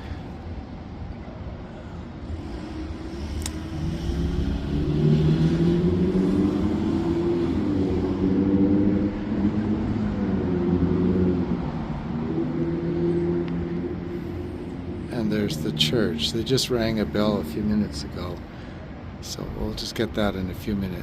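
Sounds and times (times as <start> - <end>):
vehicle engine rumbling: 0.0 - 21.0.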